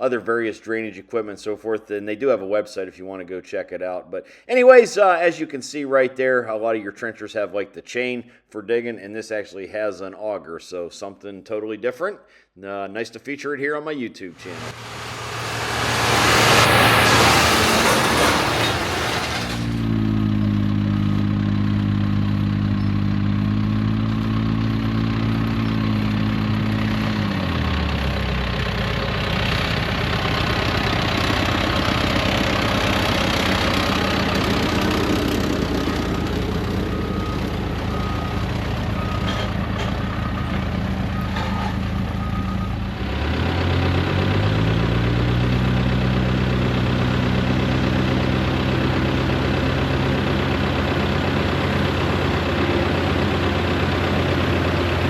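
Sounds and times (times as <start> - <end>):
loud rushing noise: 14.4 - 19.9
diesel engine running: 14.4 - 55.0.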